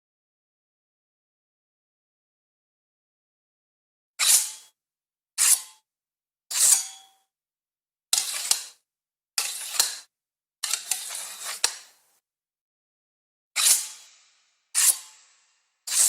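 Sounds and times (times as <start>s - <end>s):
sword scraping out of sheath: 4.2s - 4.7s, 5.4s - 5.8s, 6.5s - 7.1s, 8.2s - 8.8s, 9.4s - 12.0s, 13.6s - 16.0s.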